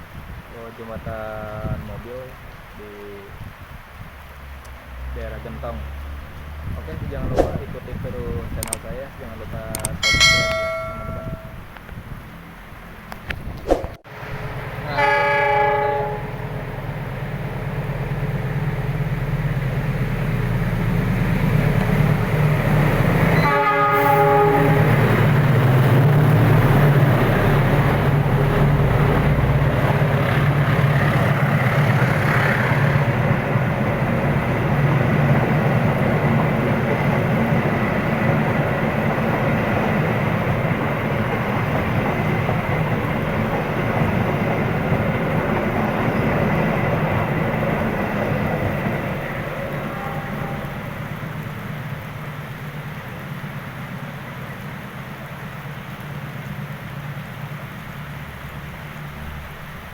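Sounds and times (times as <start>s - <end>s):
train rumbling on rails: 0.0s - 59.9s
train horn blast: 14.8s - 16.6s, 23.3s - 25.3s, 49.6s - 51.1s.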